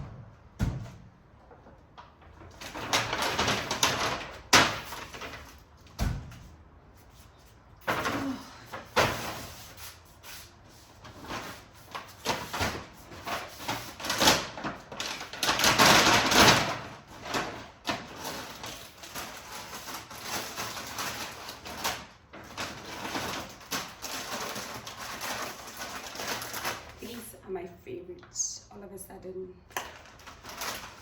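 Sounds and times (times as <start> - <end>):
groceries and containers clattering: 1.5 - 5.9, 11.0 - 27.2, 29.7 - 31.0.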